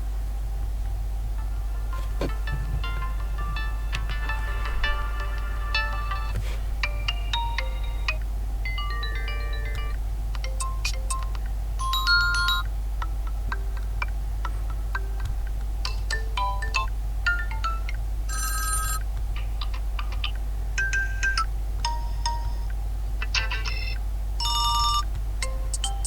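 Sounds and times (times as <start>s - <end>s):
steady low hum: 0.0s - 26.0s
smartphone ringtone chime tune: 18.3s - 19.0s.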